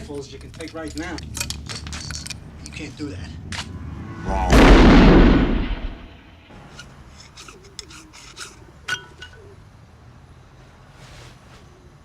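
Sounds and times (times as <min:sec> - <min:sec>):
gun clicks and rattles: 0:00.0 - 0:03.7
shotgun blast: 0:04.4 - 0:06.3.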